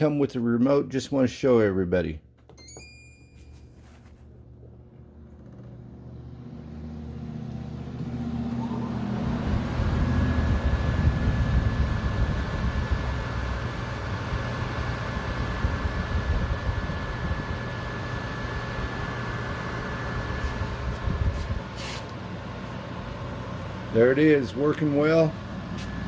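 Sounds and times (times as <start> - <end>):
air conditioner fan rushing air: 0.0 - 26.0
thin high whine: 2.6 - 4.5.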